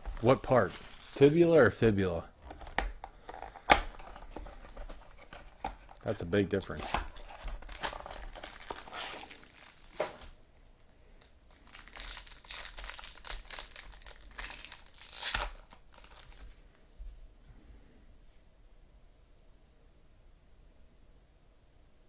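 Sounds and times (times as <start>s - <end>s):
wrappers crinkling and tearing: 0.0s - 1.6s, 6.8s - 10.4s, 11.5s - 16.6s.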